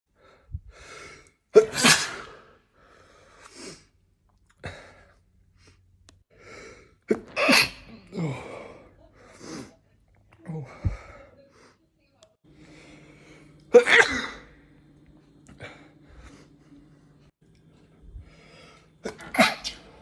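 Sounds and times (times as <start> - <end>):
person sneezing: 1.5 - 2.5, 7.1 - 8.7, 13.7 - 14.6, 19.0 - 20.0.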